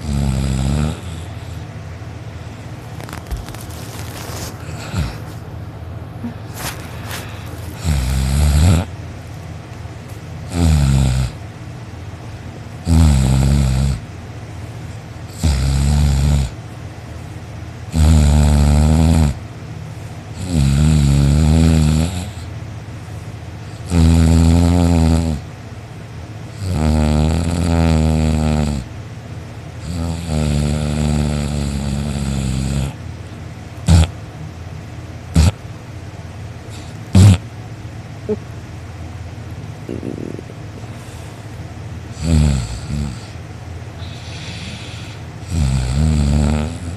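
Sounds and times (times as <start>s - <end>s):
person snoring loudly: 0.0s - 1.6s, 7.7s - 8.9s, 10.5s - 11.4s, 12.8s - 14.0s, 15.3s - 16.6s, 17.9s - 19.4s, 20.4s - 22.5s, 23.8s - 25.4s, 26.6s - 28.9s, 29.8s - 33.0s, 33.9s - 34.1s, 35.4s - 35.6s, 36.7s - 37.4s, 39.8s - 41.2s, 42.1s - 43.4s, 44.0s - 46.9s.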